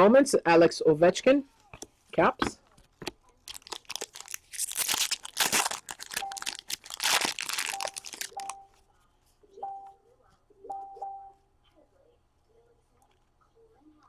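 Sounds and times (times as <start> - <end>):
foil wrappers crinkling and tearing: 3.3 - 8.6.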